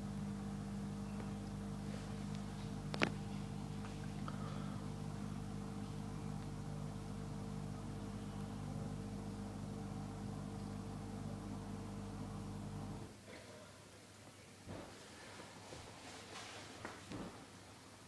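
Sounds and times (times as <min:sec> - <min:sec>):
dishwasher pump hum: 0:00.0 - 0:13.1.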